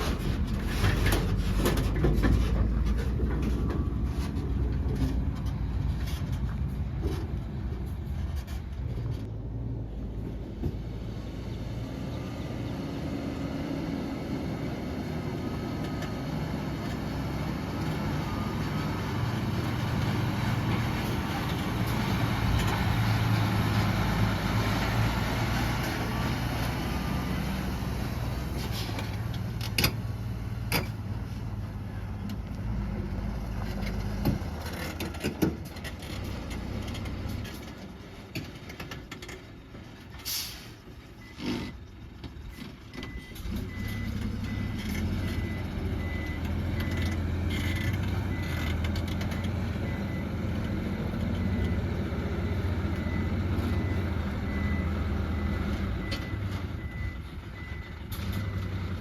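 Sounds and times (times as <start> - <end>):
diesel truck engine running: 0.0 - 59.0
air brake hisses: 40.2 - 40.8.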